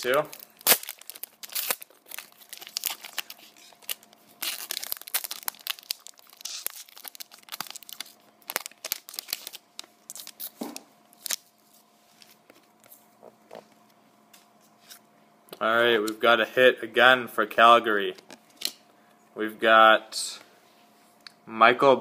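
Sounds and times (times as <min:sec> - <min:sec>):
wrapper being torn and crinkled: 0:00.0 - 0:11.5.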